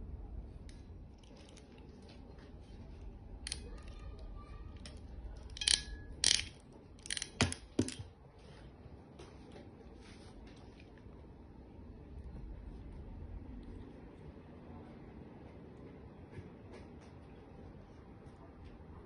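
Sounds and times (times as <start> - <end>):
small hard objects clacking: 3.5 - 4.0, 4.8 - 8.1.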